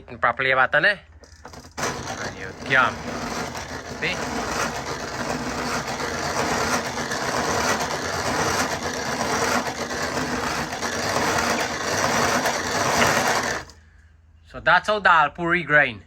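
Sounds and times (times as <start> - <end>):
hand-cranked grinder grinding peas: 1.2 - 13.8.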